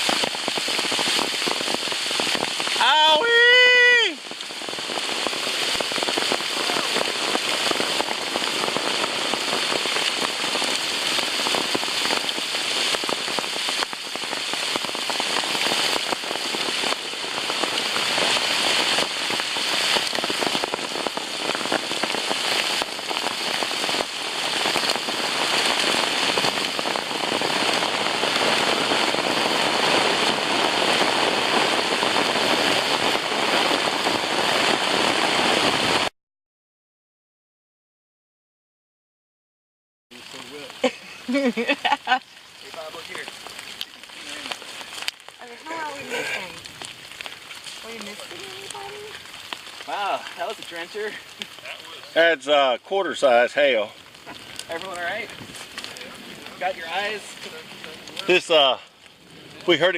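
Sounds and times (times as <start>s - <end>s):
hailstones cracking: 0.0s - 36.1s, 40.1s - 59.9s
heavy rain hiss: 0.0s - 36.1s, 40.1s - 59.9s.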